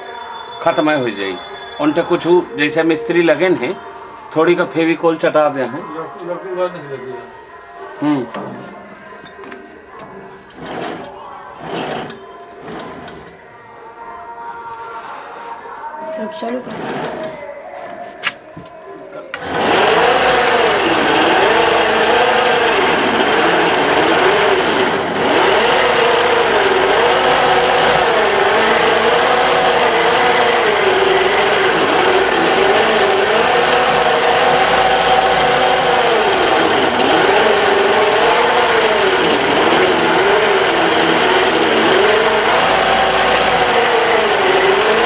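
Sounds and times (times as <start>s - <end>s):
wood lathe running: 10.5s - 13.4s, 16.6s - 17.4s, 19.4s - 45.0s.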